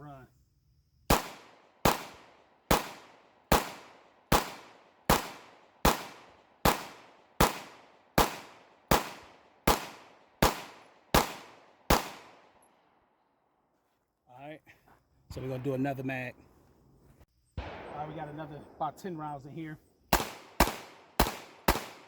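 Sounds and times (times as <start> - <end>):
pistol shots echoing: 1.1 - 12.6, 17.6 - 19.4, 20.1 - 22.0.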